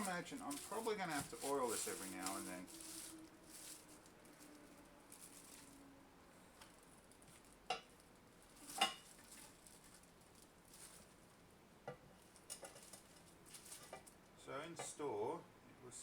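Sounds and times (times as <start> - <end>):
faint hiss: 13.4 - 16.0.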